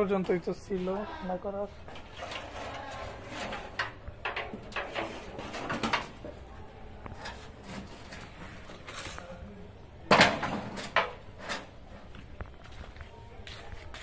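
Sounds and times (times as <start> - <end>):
kitchen things knocking and clattering: 3.5 - 6.3, 10.1 - 11.2.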